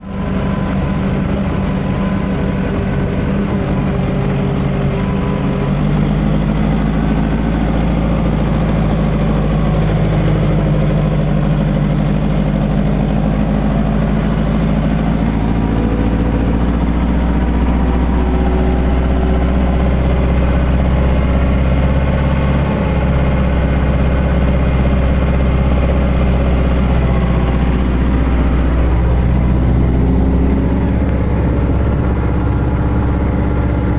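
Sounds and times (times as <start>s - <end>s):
tractor diesel engine: 0.0s - 33.9s.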